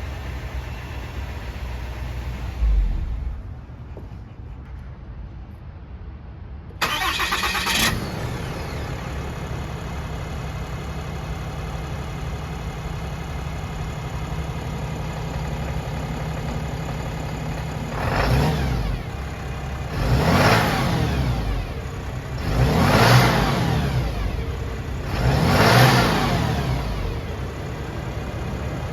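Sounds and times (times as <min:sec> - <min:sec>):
diesel engine cranking and idling: 0:00.0 - 0:04.6, 0:06.8 - 0:28.9
engine revving: 0:02.4 - 0:03.6, 0:06.8 - 0:09.2, 0:17.9 - 0:28.2.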